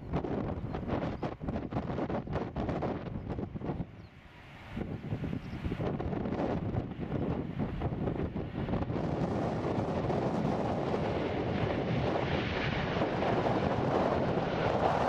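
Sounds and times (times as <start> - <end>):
jet engines of airliner: 0.0 - 15.0
wind buffeting microphone: 0.0 - 15.0.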